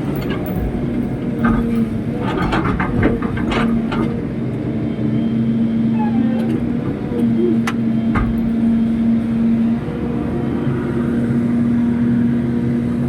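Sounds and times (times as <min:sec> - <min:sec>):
excavator diesel engine running: 0:00.0 - 0:13.0
short knocks: 0:08.1 - 0:09.6.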